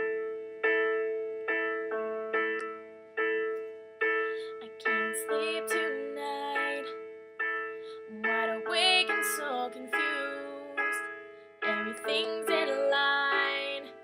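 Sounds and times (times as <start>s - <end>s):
piano chords ringing: 0.0s - 14.0s
woman singing: 4.6s - 7.1s, 8.1s - 14.0s.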